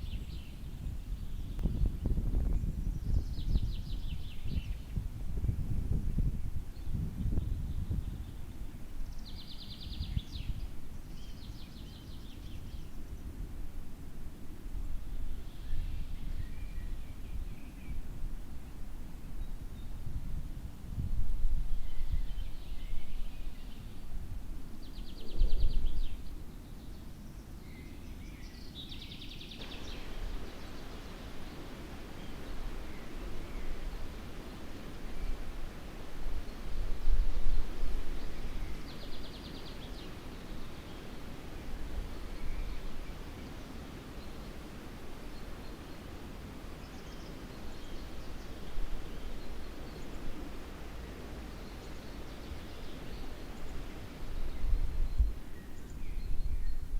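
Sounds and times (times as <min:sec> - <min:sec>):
low rumbling outdoor noise: 0:00.0 - 0:56.9
birds chirping: 0:24.8 - 0:56.9.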